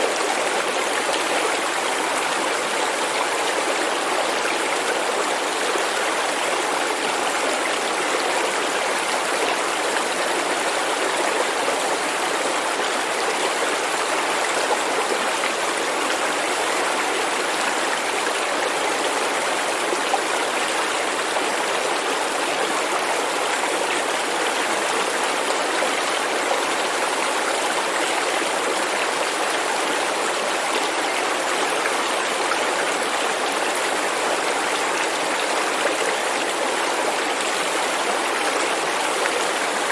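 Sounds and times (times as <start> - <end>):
stream rushing over stones: 0.0 - 39.9.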